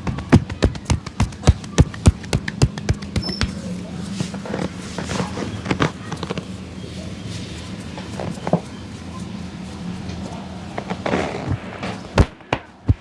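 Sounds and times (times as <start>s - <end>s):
soft pats and rubbing: 0.1s - 6.5s.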